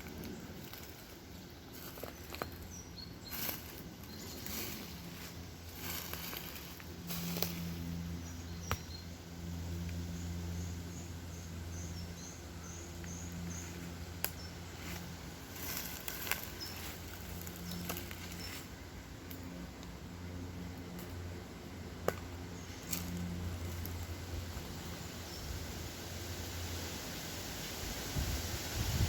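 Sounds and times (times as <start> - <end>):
footsteps on leaf litter: 0.0 - 8.8, 14.6 - 18.8
steady low hum: 0.0 - 29.0.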